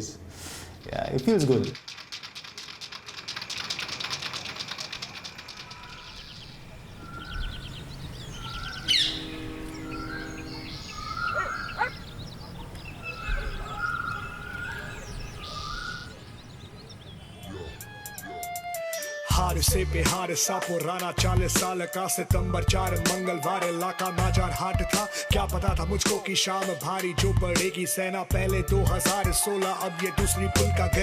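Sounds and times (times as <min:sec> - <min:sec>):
birds chirping and whistling: 0:04.0 - 0:18.8.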